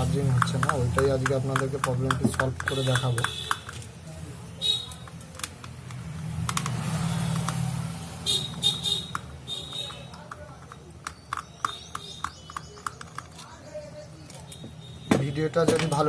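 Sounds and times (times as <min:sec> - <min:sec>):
hand tool clicks and taps: 0:00.1 - 0:03.8, 0:04.9 - 0:07.7, 0:08.4 - 0:13.5.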